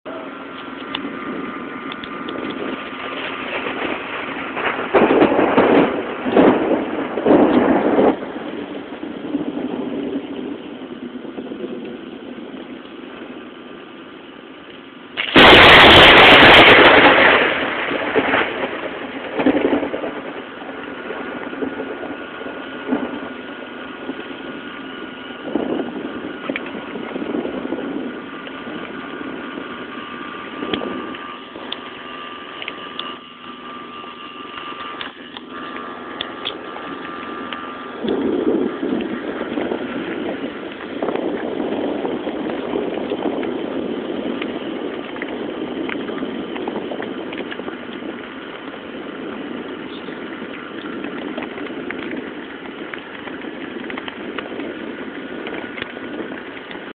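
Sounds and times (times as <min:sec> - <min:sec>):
loud noise bursts: 0:00.1 - 0:10.6, 0:15.1 - 0:56.9
loud thunderclap: 0:01.1 - 0:10.6, 0:15.2 - 0:29.8, 0:35.6 - 0:56.9.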